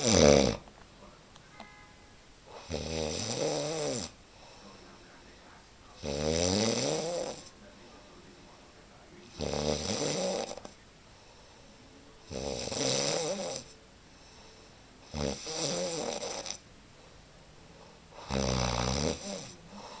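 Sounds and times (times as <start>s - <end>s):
person snoring: 0.0s - 0.6s, 2.5s - 4.2s, 6.0s - 7.5s, 9.2s - 10.8s, 12.2s - 16.6s, 17.8s - 20.0s.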